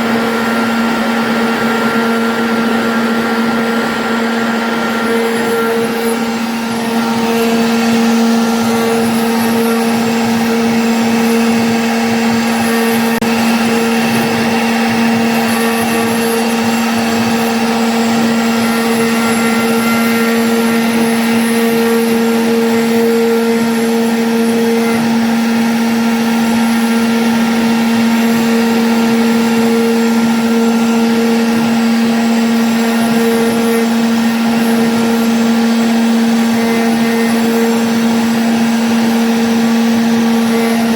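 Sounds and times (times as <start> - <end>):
router spindle cutting: 0.0 - 40.9.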